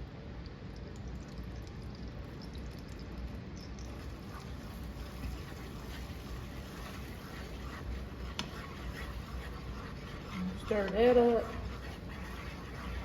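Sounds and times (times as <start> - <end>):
food hissing in a pan: 4.0 - 13.0.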